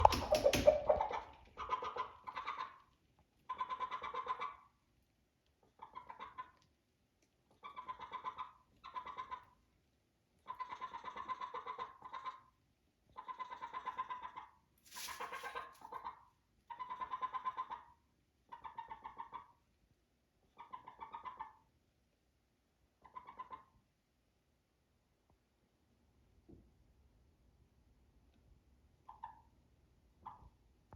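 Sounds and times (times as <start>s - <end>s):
chicken making pulsing calls: 0.0s - 2.8s, 3.5s - 4.7s, 5.8s - 6.6s, 7.6s - 9.5s, 10.4s - 12.5s, 13.1s - 17.9s.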